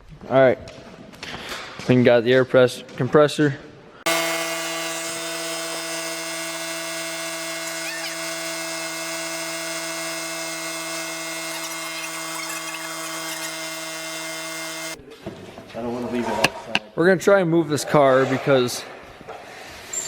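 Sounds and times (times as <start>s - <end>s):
air compressor motor hum: 4.1s - 15.0s.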